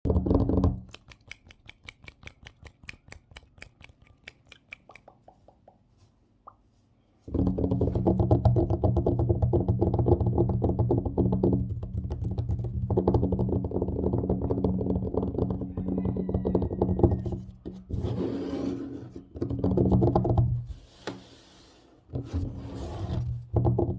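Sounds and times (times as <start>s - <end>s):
tapping and scratching on table: 7.3s - 21.4s, 22.1s - 23.9s.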